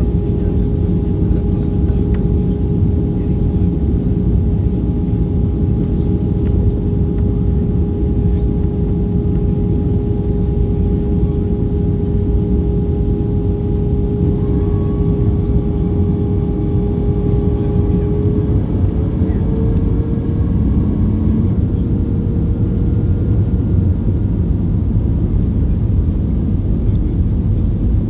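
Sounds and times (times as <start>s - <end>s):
airflow and engine rumble: 0.0s - 28.0s
constant droning tone: 0.0s - 28.0s.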